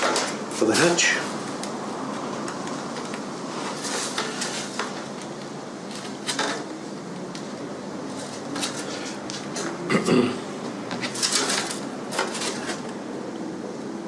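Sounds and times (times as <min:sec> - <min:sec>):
paper and foam rustling: 0:02.2 - 0:06.8, 0:07.5 - 0:09.8, 0:10.9 - 0:13.1.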